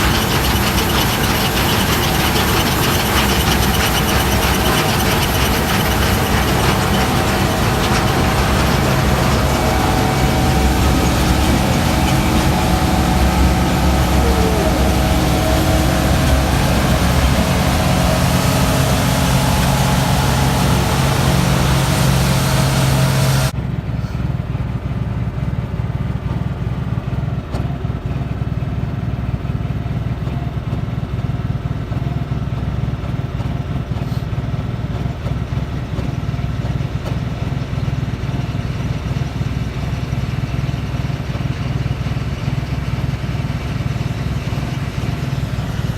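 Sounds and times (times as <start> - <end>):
harvester engine running: 0.0 - 23.6.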